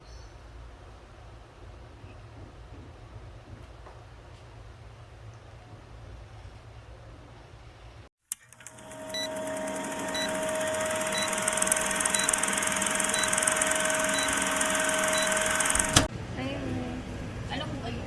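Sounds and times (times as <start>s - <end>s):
mechanical whirring: 8.3s - 16.1s
click: 11.1s - 16.1s.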